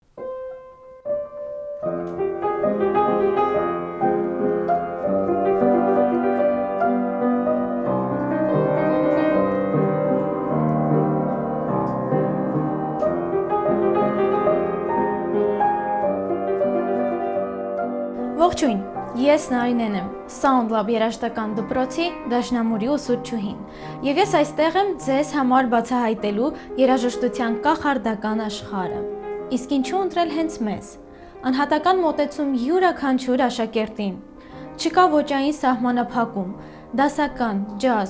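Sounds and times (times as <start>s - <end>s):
piano playing: 0.0s - 38.0s.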